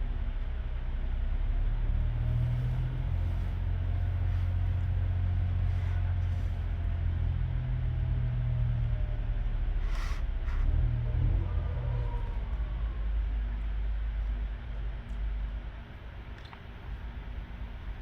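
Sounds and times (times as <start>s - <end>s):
low machine hum: 0.0s - 18.0s.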